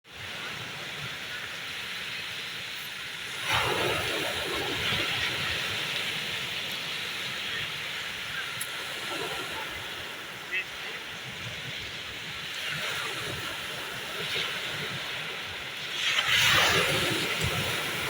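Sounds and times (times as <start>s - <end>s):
surf washing on shore: 0.1s - 18.0s
wave breaking: 12.6s - 18.0s.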